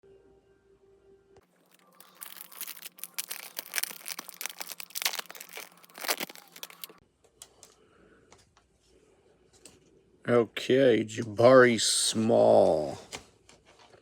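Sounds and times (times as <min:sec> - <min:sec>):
foil wrapper tearing and crinkling: 0:01.6 - 0:07.0.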